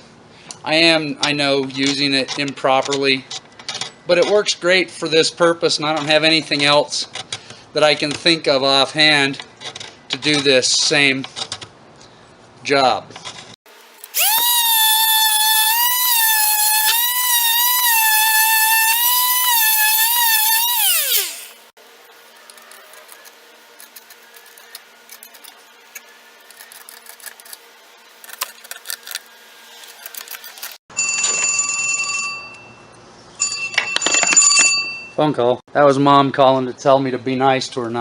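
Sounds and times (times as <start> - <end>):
electric power tool whining: 13.8 - 21.8.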